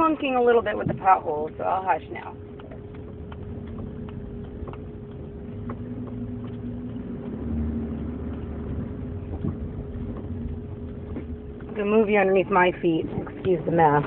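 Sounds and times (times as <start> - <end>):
engine and road rumble: 0.0 - 14.0
faint suspension knocks: 2.2 - 12.2.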